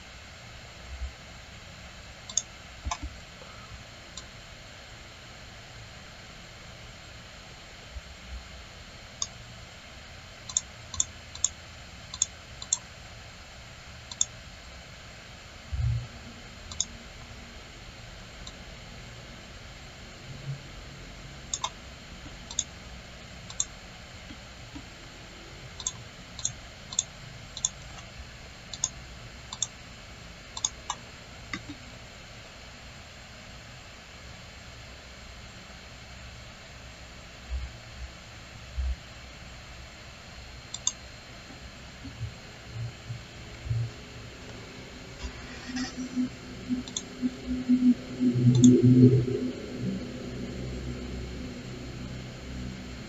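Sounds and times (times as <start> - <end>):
computer mouse clicking: 2.3 - 3.2, 10.5 - 12.9, 14.1 - 14.4, 16.7 - 16.9, 21.5 - 22.7, 23.5 - 23.7, 25.8 - 28.1, 28.7 - 29.8, 30.6 - 31.8, 40.7 - 41.0, 45.2 - 47.1, 48.5 - 48.8.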